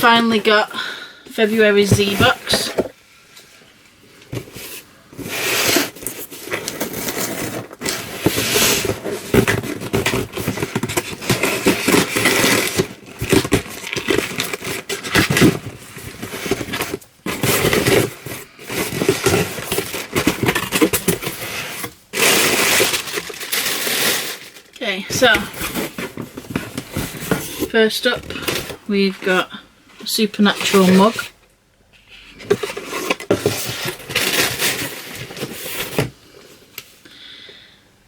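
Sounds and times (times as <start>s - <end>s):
cardboard and paper scraping and tearing: 4.3s - 28.8s, 30.5s - 31.3s, 32.4s - 36.1s.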